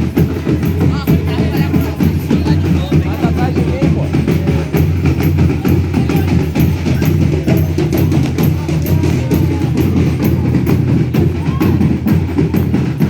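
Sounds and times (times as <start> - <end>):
drum beating steady rhythm: 0.0 - 13.0.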